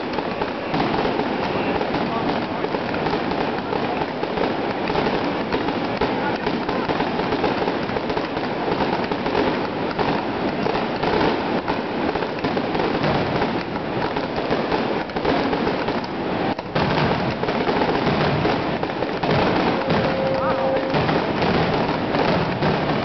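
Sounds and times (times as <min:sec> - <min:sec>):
fireworks bursts and crackles: 0:00.0 - 0:23.0.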